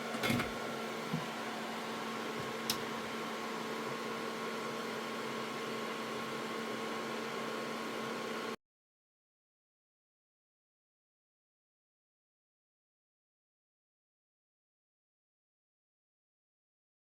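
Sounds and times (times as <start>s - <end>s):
fan hum and hiss: 0.0s - 8.6s.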